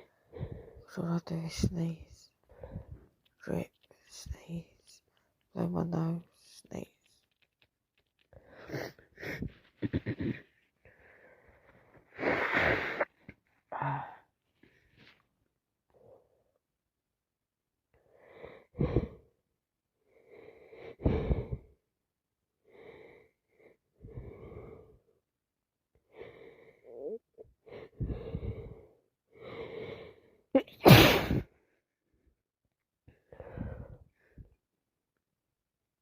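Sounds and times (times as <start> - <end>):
woman sniffing and breathing heavily: 7.2 - 14.1, 20.2 - 21.7, 26.1 - 30.2
woman sneezing: 30.6 - 31.4.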